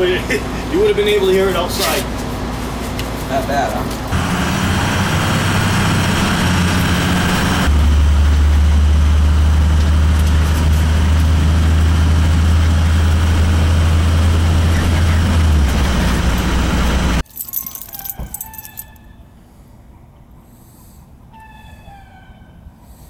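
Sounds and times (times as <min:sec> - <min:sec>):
gas furnace humming: 0:00.0 - 0:17.2
loud deep hum: 0:04.1 - 0:17.2.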